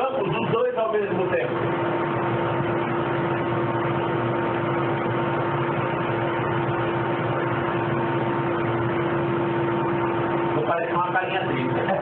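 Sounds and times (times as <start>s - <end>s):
mechanical hum with tone: 0.0s - 12.0s.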